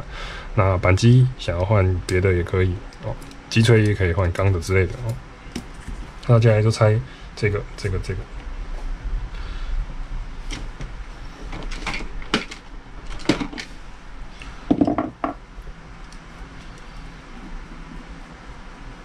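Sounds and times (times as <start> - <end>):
small parts clicking and knocking: 2.9 - 4.0, 11.5 - 13.7.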